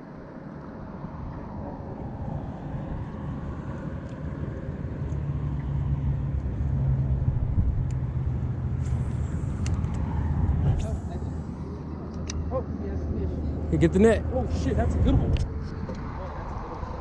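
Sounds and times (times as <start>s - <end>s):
boat engine humming: 1.7s - 17.0s.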